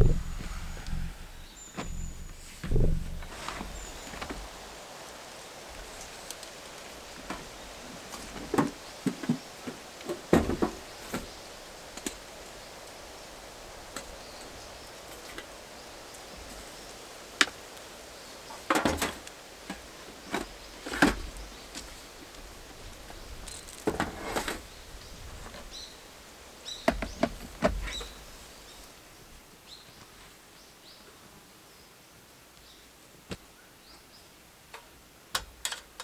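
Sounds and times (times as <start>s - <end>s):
objects being handled clattering: 5.8s - 12.3s, 18.5s - 24.7s.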